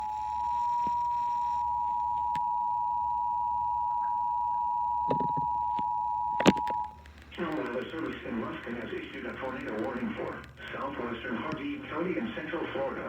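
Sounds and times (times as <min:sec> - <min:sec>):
faint clicks: 0:06.4 - 0:12.0.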